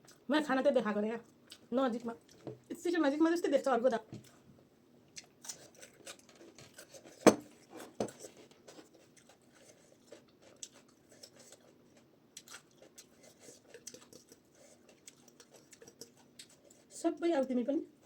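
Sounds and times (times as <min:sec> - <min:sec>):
dishes clinking: 0:07.3 - 0:08.2.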